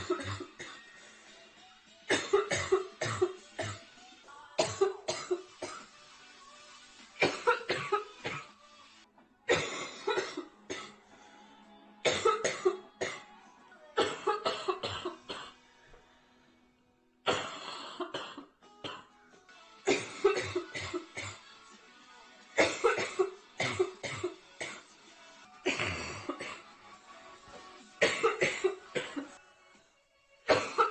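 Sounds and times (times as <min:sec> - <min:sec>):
girl coughing: 0:00.0 - 0:00.8, 0:02.1 - 0:03.8, 0:04.6 - 0:05.8, 0:07.2 - 0:08.4, 0:09.5 - 0:10.9, 0:12.1 - 0:13.2, 0:14.0 - 0:15.6, 0:17.3 - 0:19.0, 0:19.9 - 0:21.4, 0:22.6 - 0:24.8, 0:28.0 - 0:29.3, 0:30.5 - 0:30.9.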